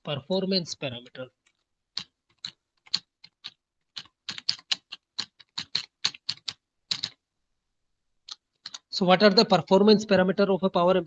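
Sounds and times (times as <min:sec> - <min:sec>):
typing on computer keyboard: 0:01.9 - 0:07.2, 0:08.3 - 0:08.9.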